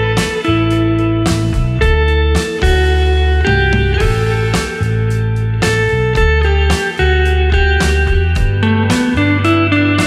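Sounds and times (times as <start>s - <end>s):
guitar plucked notes and chords: 0.0s - 10.0s.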